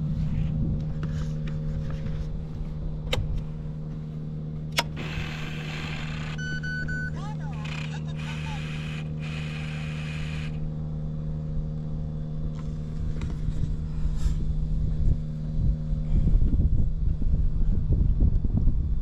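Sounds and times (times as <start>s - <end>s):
motorcycle engine idling: 8.8s - 17.7s.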